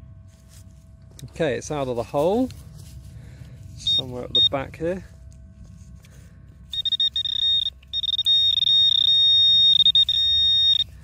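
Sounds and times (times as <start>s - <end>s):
high-pitched electronic beeping: 3.8s - 4.6s, 6.7s - 11.0s.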